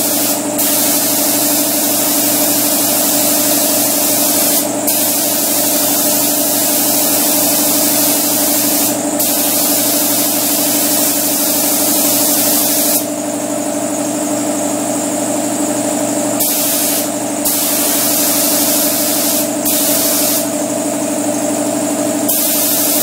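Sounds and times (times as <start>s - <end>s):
spray gun hissing: 0.0s - 13.1s, 16.4s - 20.6s, 22.3s - 23.0s
air compressor humming: 0.0s - 23.0s.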